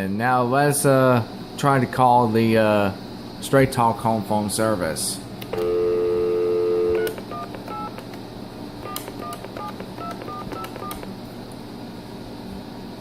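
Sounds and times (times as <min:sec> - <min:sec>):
telephone dial tone: 0:05.6 - 0:08.0, 0:08.8 - 0:11.1
touch-tone keypad beeps: 0:08.8 - 0:11.1.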